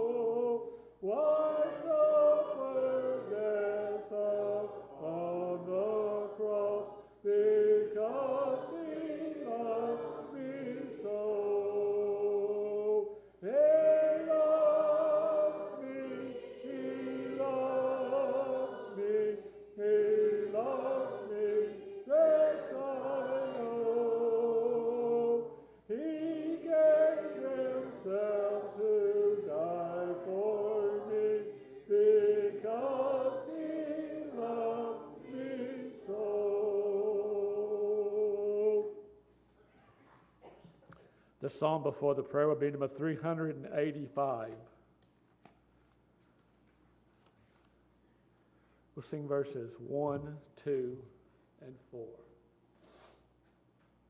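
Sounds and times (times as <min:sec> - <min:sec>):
congregation singing a hymn: 0:00.0 - 0:39.2.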